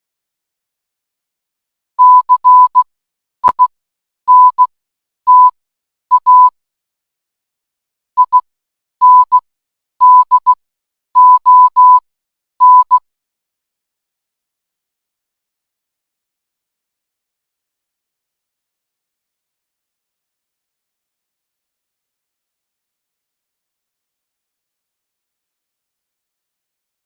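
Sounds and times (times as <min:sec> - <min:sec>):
morse code beeps: 0:02.0 - 0:02.8, 0:03.4 - 0:03.7, 0:04.3 - 0:04.7, 0:05.3 - 0:06.6, 0:08.2 - 0:08.4, 0:09.0 - 0:09.4, 0:10.0 - 0:10.6, 0:11.2 - 0:12.0, 0:12.6 - 0:13.0.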